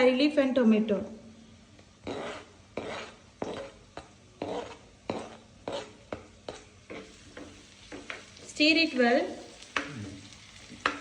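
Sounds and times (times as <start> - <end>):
spatula scraping a pan: 2.0 - 8.5, 9.6 - 11.0.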